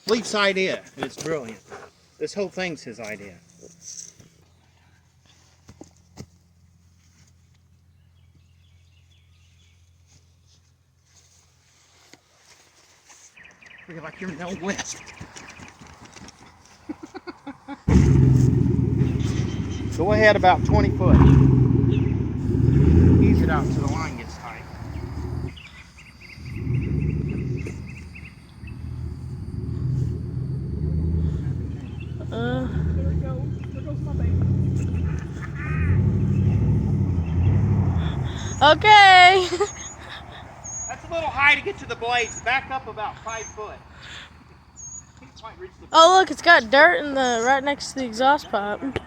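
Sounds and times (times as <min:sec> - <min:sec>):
birds chirping rapidly: 0:07.9 - 0:10.0, 0:13.4 - 0:16.6, 0:17.9 - 0:48.9
faint low hum: 0:17.9 - 0:38.8
vehicle engine running low: 0:17.9 - 0:45.4
faint high chirping: 0:23.5 - 0:38.7.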